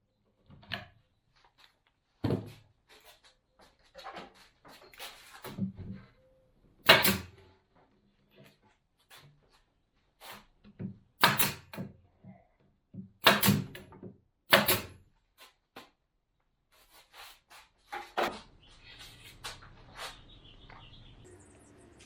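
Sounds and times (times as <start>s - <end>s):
wooden cabinet parts knocking: 2.2s - 2.6s.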